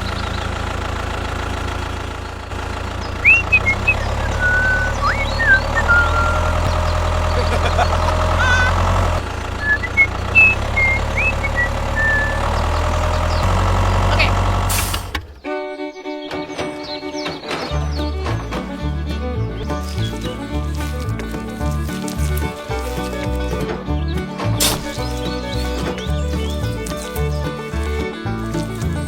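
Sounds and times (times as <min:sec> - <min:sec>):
engine idling: 0:00.0 - 0:29.0
short high chirps: 0:09.6 - 0:12.6.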